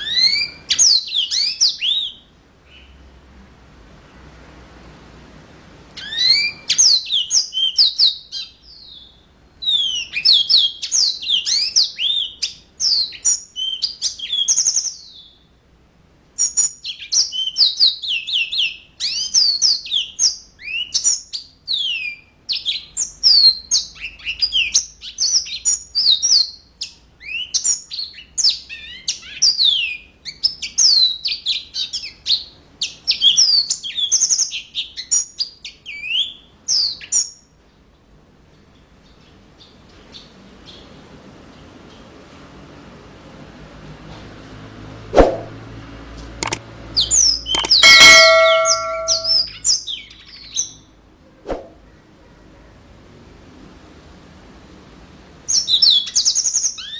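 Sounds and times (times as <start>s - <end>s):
canary singing: 46.4s - 49.4s.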